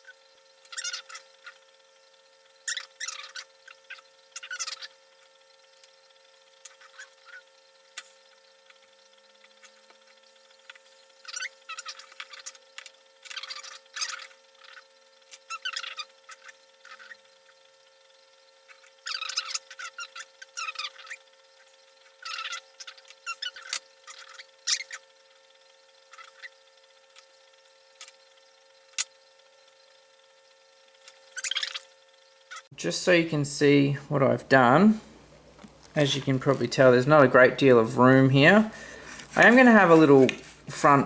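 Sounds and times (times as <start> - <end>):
faint steady hum: 0.0 - 41.0
crackling rustles: 35.2 - 40.9.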